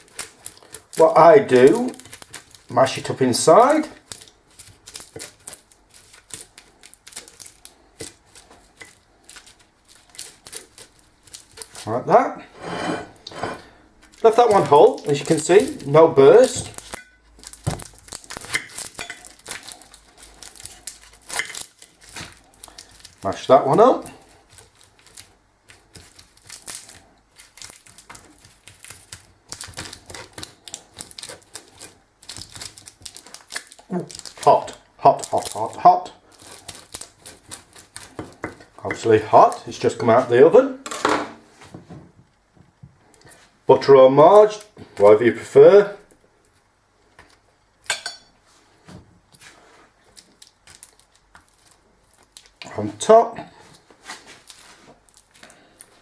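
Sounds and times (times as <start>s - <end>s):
fork mashing potato: 36.4s - 40.3s
cutlery clinking on a dish: 47.9s - 48.3s.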